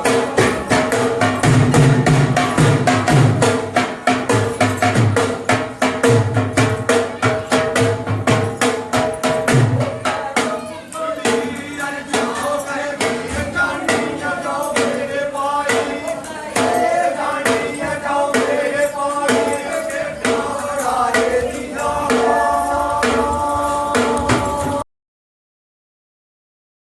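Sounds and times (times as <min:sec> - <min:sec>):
fast percussion beat: 0:00.0 - 0:24.8.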